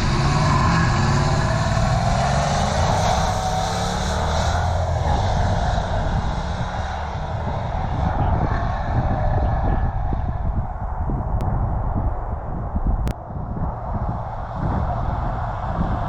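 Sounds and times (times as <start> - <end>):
truck exhaust rumble passing: 0.0 - 11.7.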